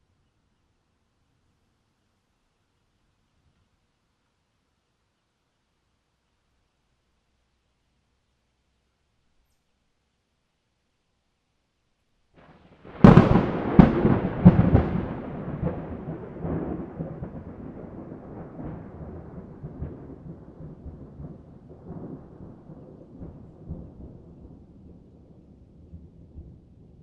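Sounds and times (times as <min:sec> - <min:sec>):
rolling thunder rumble: 0:12.4 - 0:27.0
thunder cracks: 0:12.4 - 0:27.0.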